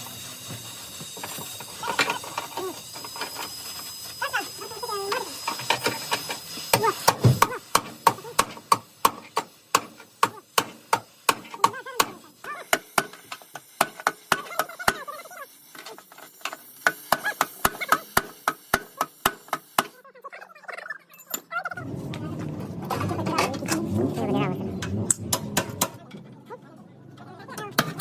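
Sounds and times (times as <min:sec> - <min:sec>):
sharp hammer strikes: 0:24.8 - 0:26.0.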